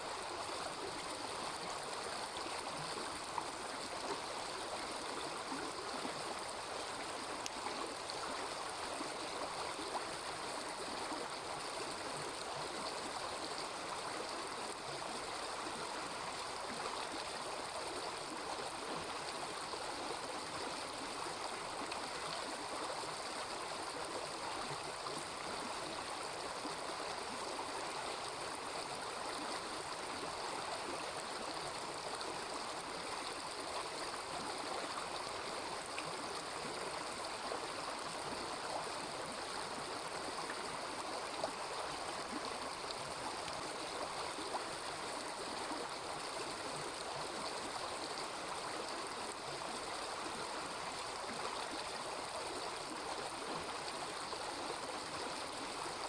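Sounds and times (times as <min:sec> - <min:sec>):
small river babbling: 0:00.0 - 0:56.0.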